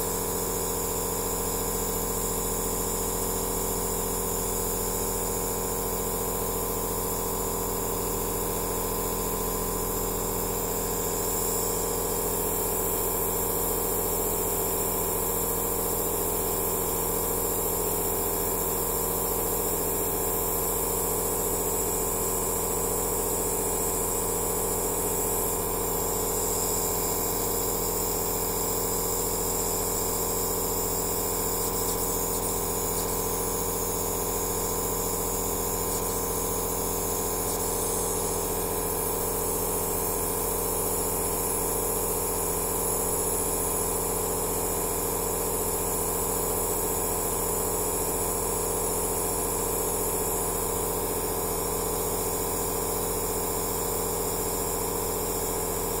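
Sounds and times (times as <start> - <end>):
nebulizer humming and hissing: 7.6 - 41.8.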